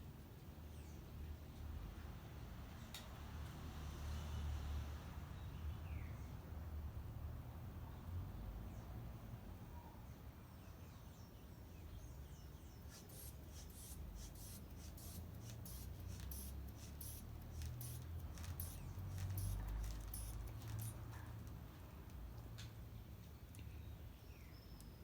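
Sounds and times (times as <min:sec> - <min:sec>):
bulb clicks and air puffs: 0:12.9 - 0:21.6.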